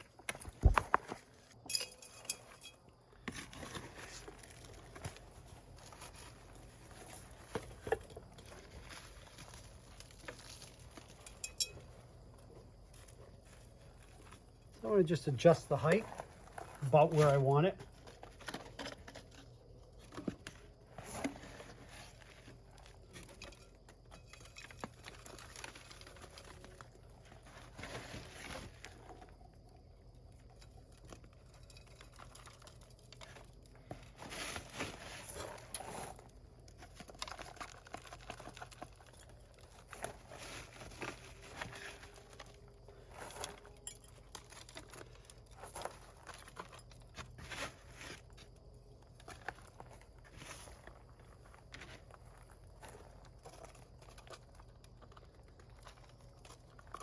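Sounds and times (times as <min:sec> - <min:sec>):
potting soil rustling and pattering: 0:00.0 - 0:57.0
small clicks and scrapes: 0:30.3 - 0:57.0.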